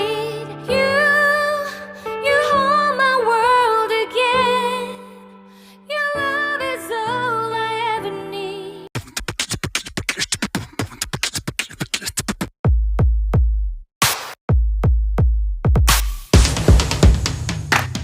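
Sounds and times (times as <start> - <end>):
drum machine roll: 12.2 - 18.0
hi-hat hits: 15.9 - 18.0.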